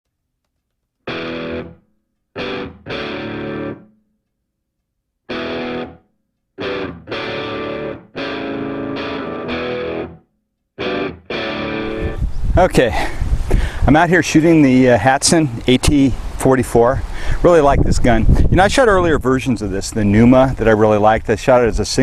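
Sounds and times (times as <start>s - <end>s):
distorted electric guitar chords: 1.1s - 1.8s, 2.4s - 4.0s, 5.3s - 6.0s, 6.6s - 10.2s, 10.8s - 12.2s.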